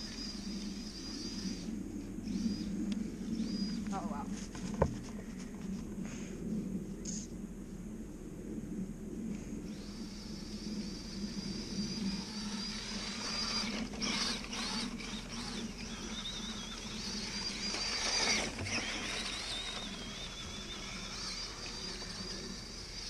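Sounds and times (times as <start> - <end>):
rc car motor whining: 0.0 - 4.3, 9.6 - 23.0.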